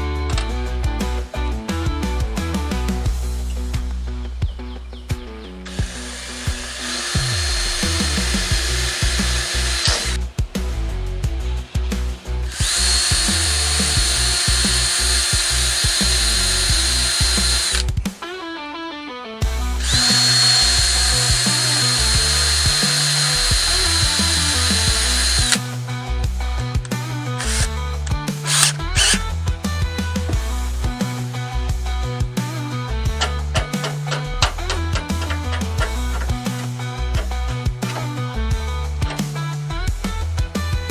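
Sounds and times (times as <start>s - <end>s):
background music: 0.0s - 40.9s
electric drill whining: 5.7s - 10.2s, 12.5s - 18.0s, 19.8s - 25.7s, 27.3s - 29.4s.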